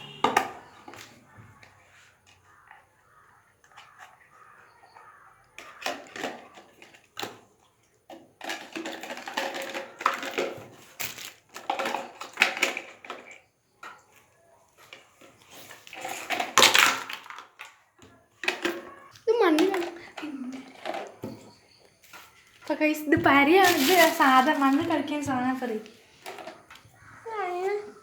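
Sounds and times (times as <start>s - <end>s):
toys and packaging rustling: 0.8s - 27.9s.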